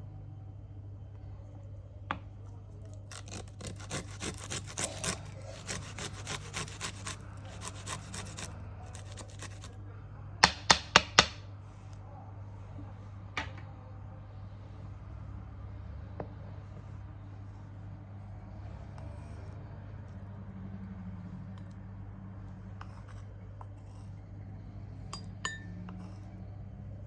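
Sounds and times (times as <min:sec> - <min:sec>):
quick rasping strokes: 0:03.1 - 0:09.8.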